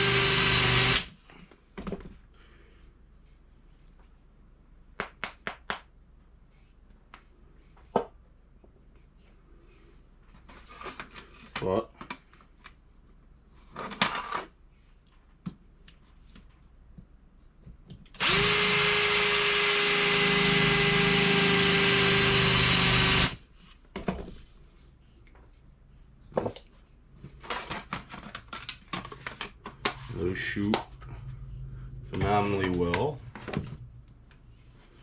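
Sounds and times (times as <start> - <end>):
power drill whining: 0.0 - 1.2, 18.2 - 23.4.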